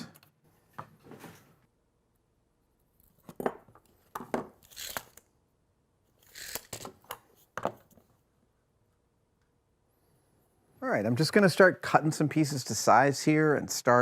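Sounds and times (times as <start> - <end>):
rustling and sliding noises: 0.5 - 1.7.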